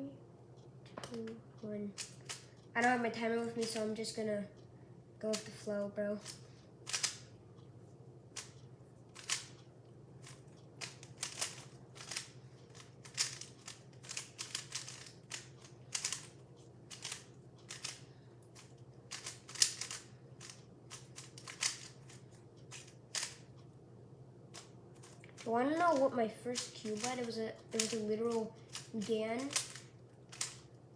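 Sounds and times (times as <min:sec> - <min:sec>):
speed cube clacking: 0:02.0 - 0:02.4, 0:03.5 - 0:03.9, 0:05.3 - 0:05.6, 0:06.2 - 0:07.3, 0:09.2 - 0:09.6, 0:10.2 - 0:23.5, 0:24.5 - 0:30.7.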